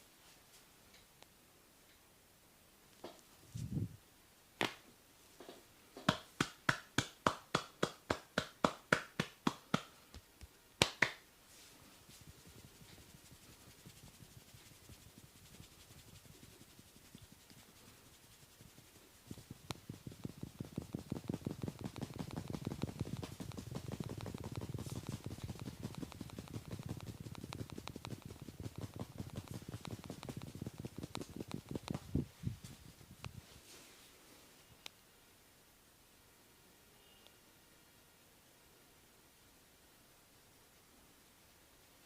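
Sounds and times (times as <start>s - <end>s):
percussive massage strikes: 6.0s - 10.0s, 10.8s - 11.2s, 12.4s - 32.2s
faint rubbing: 11.4s - 34.4s.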